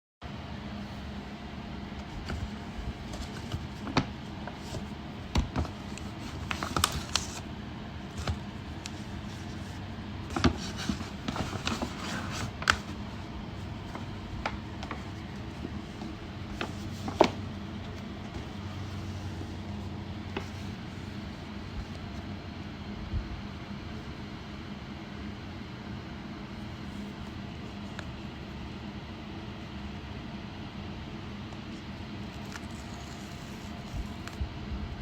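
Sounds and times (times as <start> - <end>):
steady low background hum: 0.2 - 35.0
rustling and scraping packaging: 2.0 - 22.3, 31.6 - 34.4.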